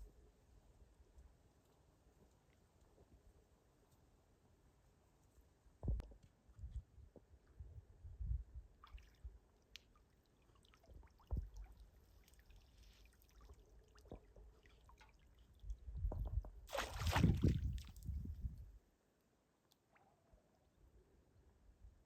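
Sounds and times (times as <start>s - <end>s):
wind rumble on microphone: 5.8s - 8.8s, 15.6s - 18.8s
water splashing and pouring: 16.7s - 18.1s.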